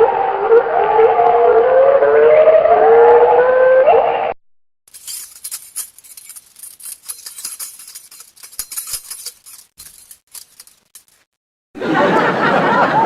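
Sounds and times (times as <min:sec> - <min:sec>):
siren-like wail: 0:00.0 - 0:04.4
high-pitched jingling rattle: 0:04.9 - 0:11.3.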